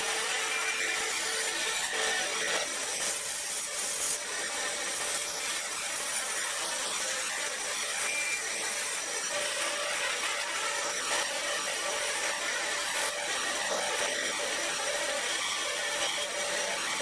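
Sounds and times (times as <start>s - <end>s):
saw cutting wood: 0.0s - 17.0s.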